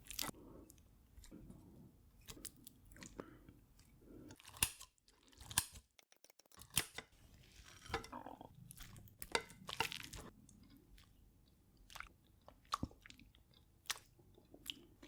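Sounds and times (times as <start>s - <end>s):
close chewing with wet clicks: 8.1s - 15.0s.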